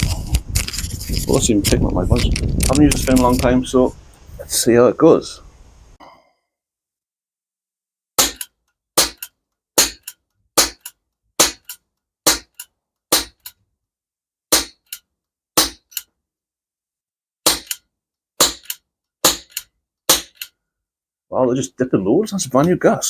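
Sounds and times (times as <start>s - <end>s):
airgun cracks: 8.2s - 13.6s, 17.5s - 20.6s
pellet hitting steel plates: 8.2s - 13.6s, 14.5s - 15.0s, 15.6s - 16.0s, 17.4s - 17.8s, 18.4s - 20.5s.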